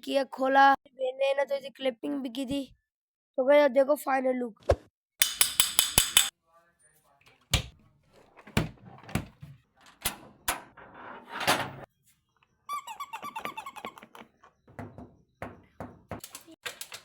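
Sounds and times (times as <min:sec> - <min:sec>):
objects knocking: 0:07.4 - 0:10.0, 0:13.4 - 0:17.0
squeaky rattling: 0:12.6 - 0:16.6.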